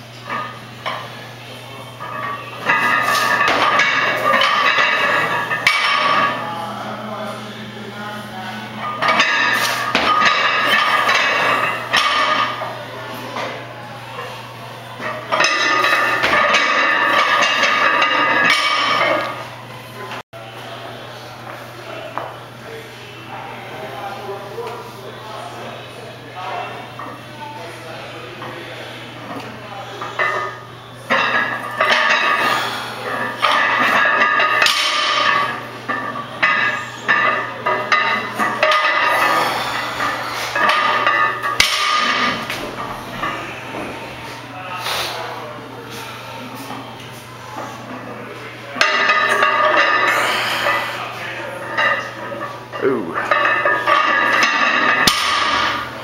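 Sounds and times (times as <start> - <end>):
metal weights clanking: 1.9 - 6.4, 8.7 - 12.8, 15.0 - 19.5, 29.3 - 44.5, 47.5 - 56.0.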